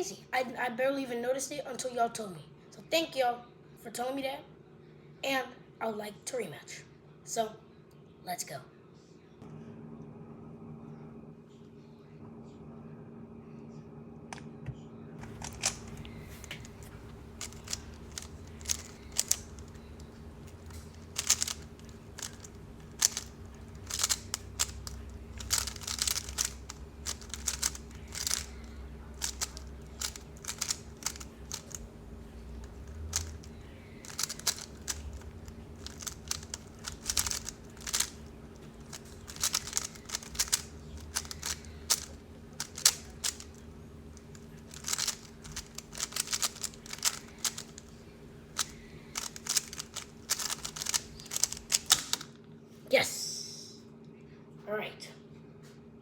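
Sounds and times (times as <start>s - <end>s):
puzzle cube layers clicking: 15.3s - 28.5s, 29.1s - 43.6s, 44.3s - 47.9s, 48.6s - 52.3s.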